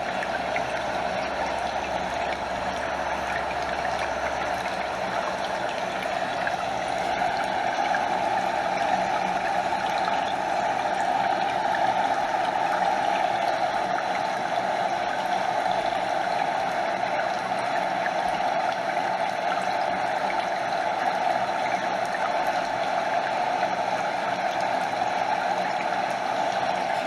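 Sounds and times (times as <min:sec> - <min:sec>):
stream water rushing: 0:00.0 - 0:16.7, 0:24.2 - 0:27.0
small waterfall cascading: 0:00.0 - 0:27.0.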